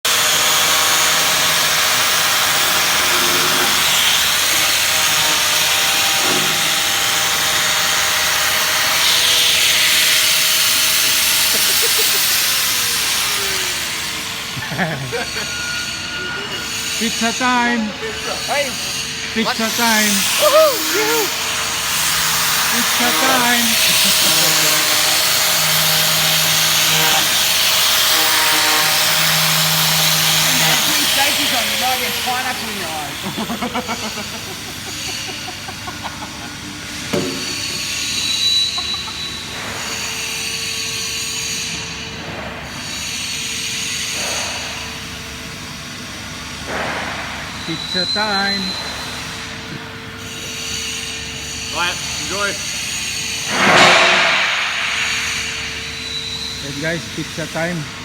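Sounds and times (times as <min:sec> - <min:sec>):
angle grinder running: 0:00.1 - 0:42.0, 0:50.2 - 0:53.8.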